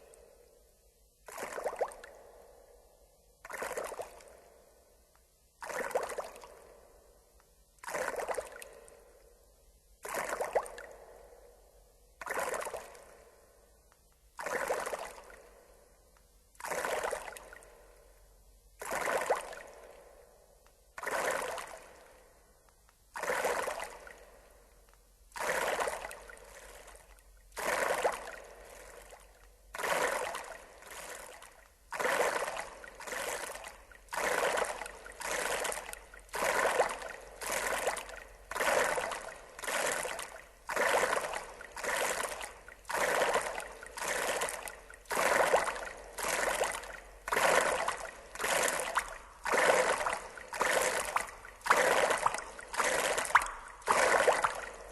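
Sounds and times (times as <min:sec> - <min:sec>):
water splashing surges: 0:29.8 - 0:54.9.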